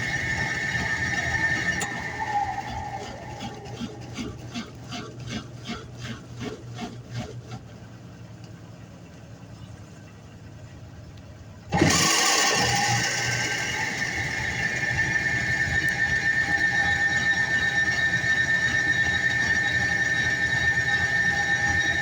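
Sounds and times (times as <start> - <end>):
low hum: 0.0 - 5.9
washing machine motor whine: 0.0 - 8.8, 11.7 - 22.0.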